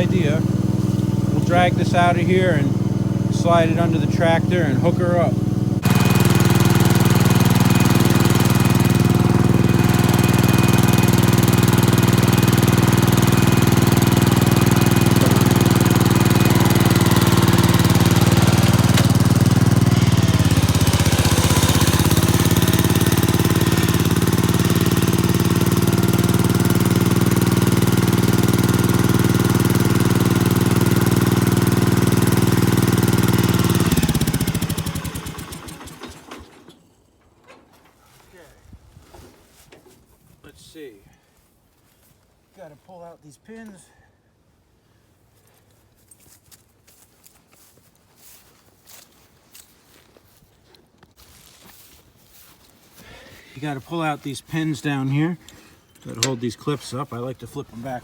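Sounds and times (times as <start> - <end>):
garden tractor engine running: 0.0 - 38.5, 51.2 - 58.0.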